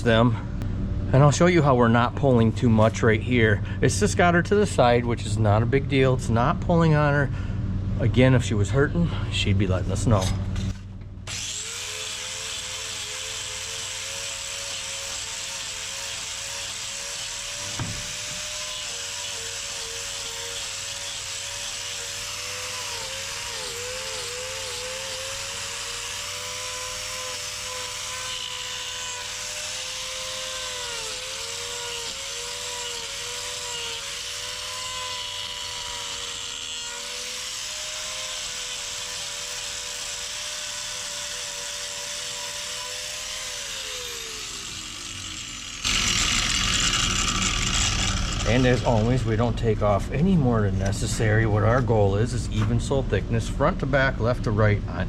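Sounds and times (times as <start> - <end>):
electric grinder on hoof: 11.3 - 49.9
short knock: 17.8 - 18.1.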